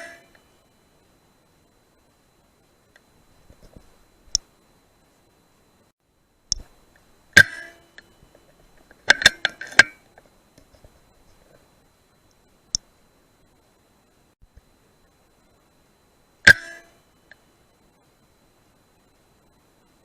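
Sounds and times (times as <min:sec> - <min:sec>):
metallic ring: 0:00.0 - 0:00.4, 0:07.4 - 0:08.2, 0:16.4 - 0:17.0.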